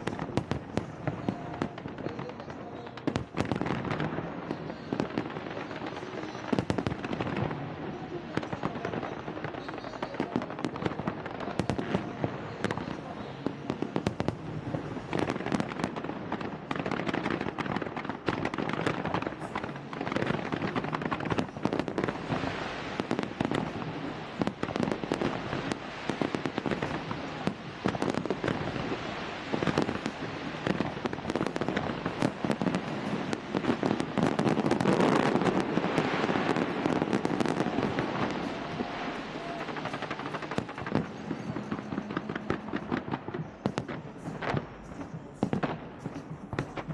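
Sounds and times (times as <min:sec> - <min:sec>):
fireworks bangs and crackles: 0:00.0 - 0:46.9.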